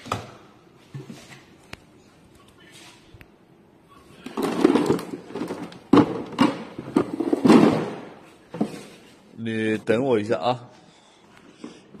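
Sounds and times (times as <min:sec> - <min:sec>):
things knocking and clattering: 0:04.2 - 0:09.0.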